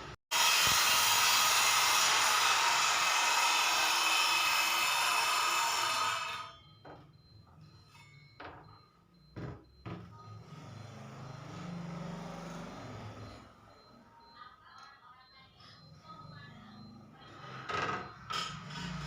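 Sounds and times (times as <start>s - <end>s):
circular saw cutting wood: 0.3s - 6.6s, 18.4s - 19.0s.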